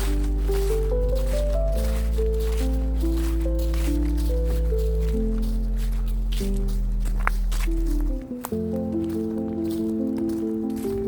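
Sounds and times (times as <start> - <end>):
music of sustained chords: 0.0 - 11.0.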